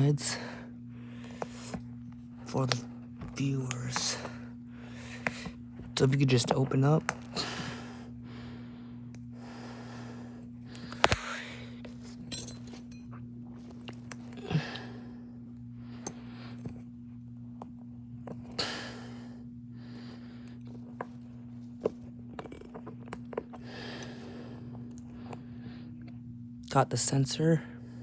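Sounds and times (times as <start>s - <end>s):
steady electrical hum: 0.0s - 28.0s
person breathing: 0.2s - 1.8s, 4.1s - 5.6s, 7.2s - 12.0s, 14.4s - 16.8s, 18.6s - 20.9s, 23.6s - 26.0s.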